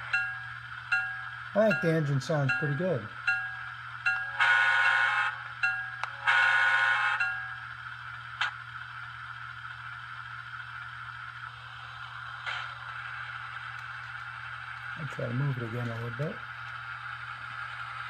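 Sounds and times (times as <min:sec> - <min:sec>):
diesel engine running: 0:00.0 - 0:18.0
air horn blasts: 0:04.4 - 0:05.3, 0:06.2 - 0:07.2.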